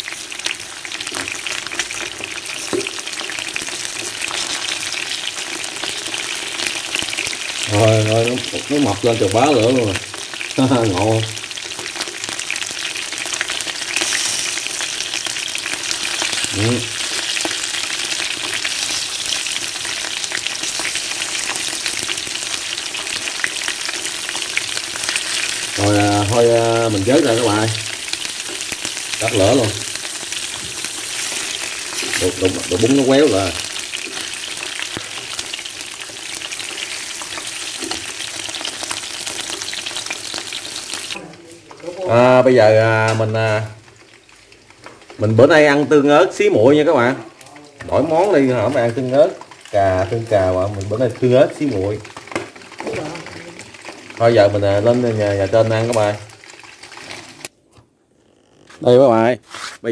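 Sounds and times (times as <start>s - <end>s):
food sizzling in hot oil: 0.0s - 57.5s.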